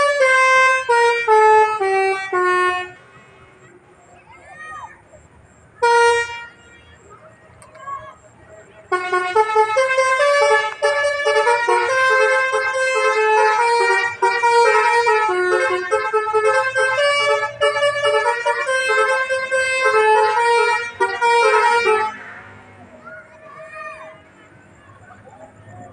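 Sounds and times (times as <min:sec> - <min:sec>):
bus multi-tone horn melody: 0:00.0 - 0:03.7, 0:05.8 - 0:07.0, 0:08.7 - 0:23.4.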